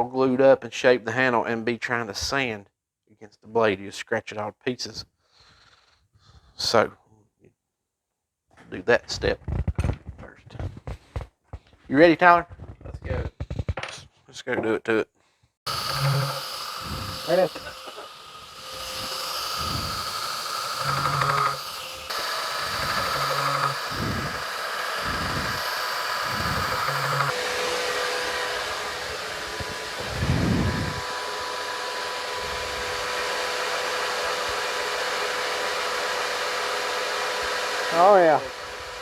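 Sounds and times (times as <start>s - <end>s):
belt grinder whirring: 15.7s - 39.0s.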